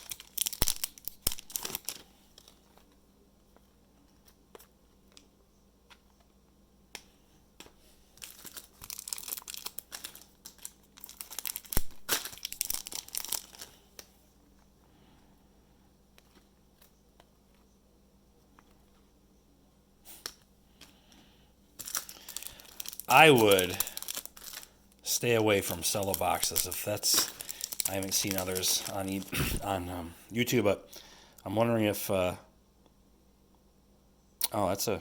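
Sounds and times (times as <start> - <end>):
plastic wrapper crinkling and tearing: 0.0 - 3.0, 8.1 - 14.1, 21.8 - 30.5.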